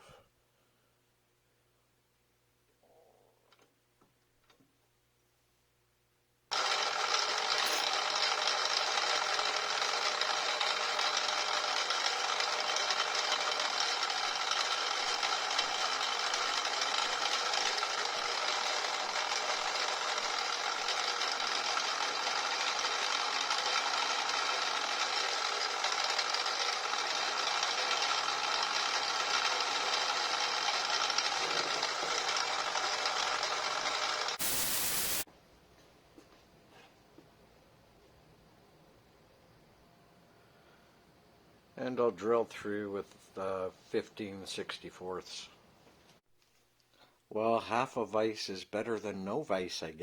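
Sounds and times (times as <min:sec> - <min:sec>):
milling machine motor whining: 0:06.6 - 0:35.2.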